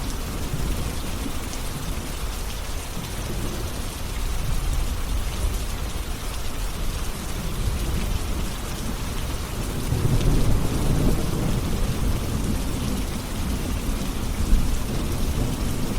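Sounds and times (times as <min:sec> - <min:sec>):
steady rain: 0:00.0 - 0:15.9
thunder rumble: 0:09.6 - 0:15.9.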